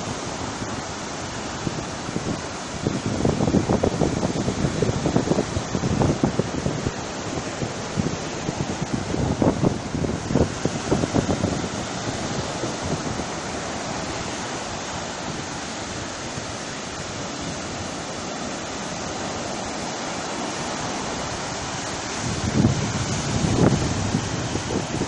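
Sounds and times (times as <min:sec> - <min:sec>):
surf breaking on shore: 0:00.0 - 0:25.0
wind buffeting microphone: 0:00.0 - 0:25.0.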